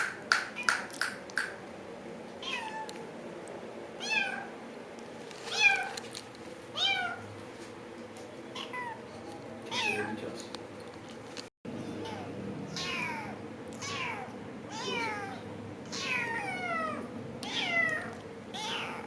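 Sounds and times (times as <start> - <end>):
cat meowing: 2.4 - 2.9, 12.0 - 19.0.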